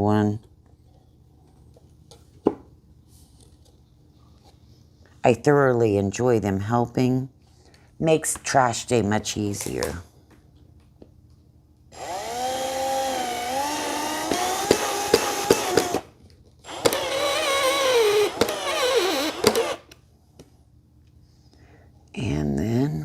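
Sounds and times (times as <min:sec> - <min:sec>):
cordless drill driving screws: 0:12.0 - 0:20.0.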